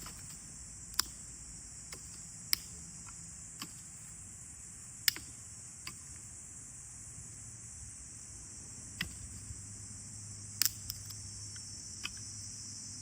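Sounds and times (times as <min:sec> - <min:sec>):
sharp clicks and knocks: 0:00.0 - 0:01.2, 0:05.0 - 0:06.2
high-pitched hiss: 0:00.0 - 0:13.0.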